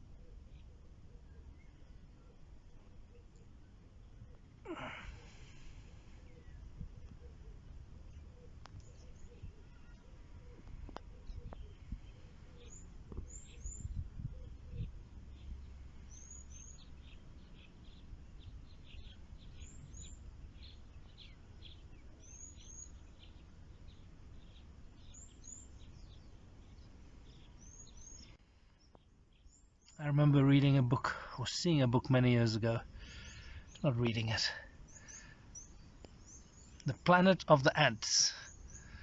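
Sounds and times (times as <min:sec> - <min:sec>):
quick lower bird chirps: 0:04.7 - 0:30.0, 0:32.9 - 0:37.1.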